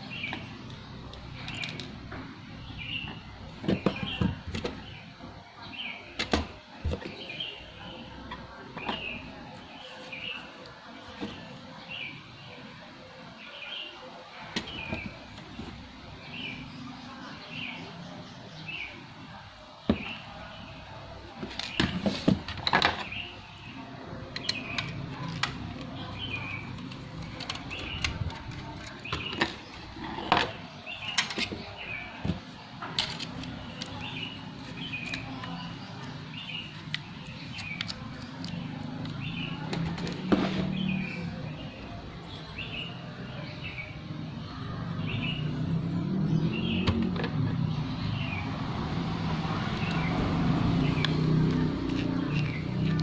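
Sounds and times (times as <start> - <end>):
laptop parts clicking and knocking: 24.3 - 29.8.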